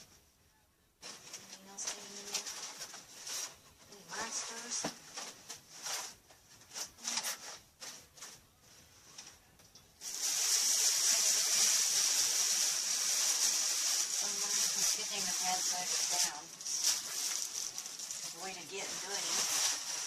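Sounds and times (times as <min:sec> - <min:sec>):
rustling and handling noises: 0:01.0 - 0:20.0
steady hiss: 0:10.0 - 0:20.0.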